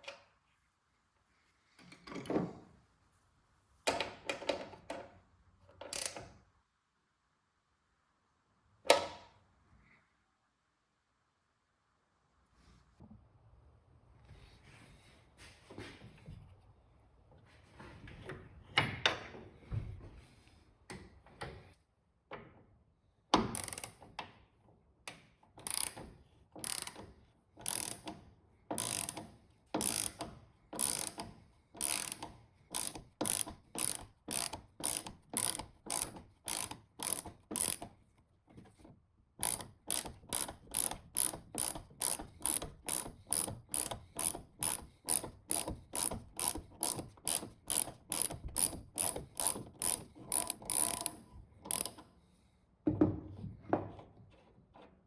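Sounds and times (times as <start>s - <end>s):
ratchet wrench clicking: 23.6s - 24.0s, 25.6s - 28.1s, 28.8s - 37.9s, 39.4s - 52.0s.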